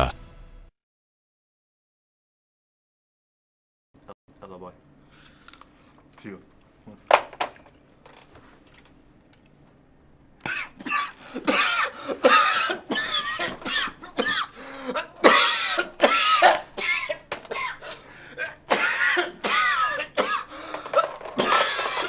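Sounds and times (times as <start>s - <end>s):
man coughing: 10.4s - 22.0s.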